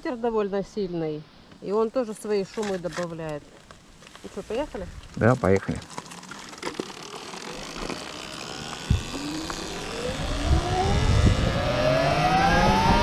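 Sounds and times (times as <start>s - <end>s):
wind and road noise: 1.0s - 13.0s
electric motor whine rising: 5.9s - 13.0s.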